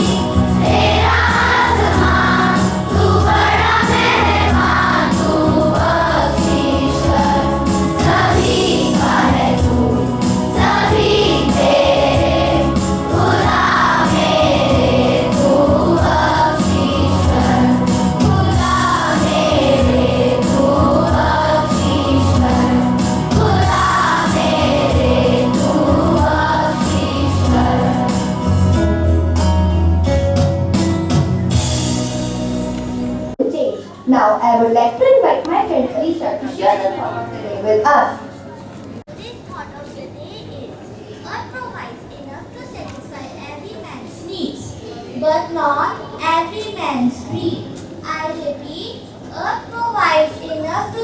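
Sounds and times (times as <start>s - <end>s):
group singing: 0.0s - 28.6s
musical accompaniment: 0.0s - 34.0s.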